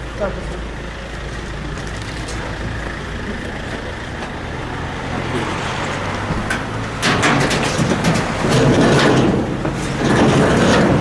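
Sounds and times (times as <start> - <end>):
street noise: 0.0 - 11.0
vehicle engine running: 0.0 - 11.0.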